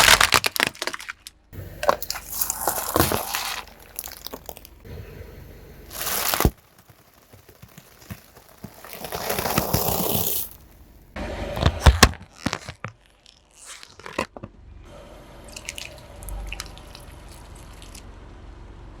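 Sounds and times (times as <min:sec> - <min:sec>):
object crushed under car tyre: 0:00.0 - 0:04.9, 0:05.8 - 0:14.6.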